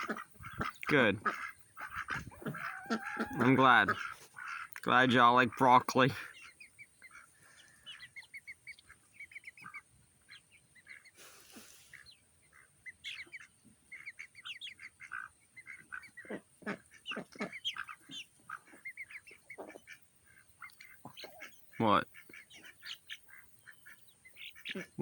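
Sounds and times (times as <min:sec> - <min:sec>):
chickens and ducks calling: 0:00.0 - 0:25.0
rustle: 0:01.4 - 0:04.8, 0:06.3 - 0:14.0.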